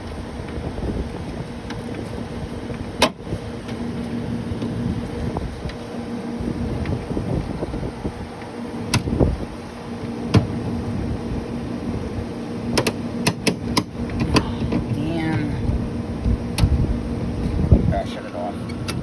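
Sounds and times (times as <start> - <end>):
mechanical hum: 0.0 - 19.0
sharp clicks and knocks: 12.7 - 15.0.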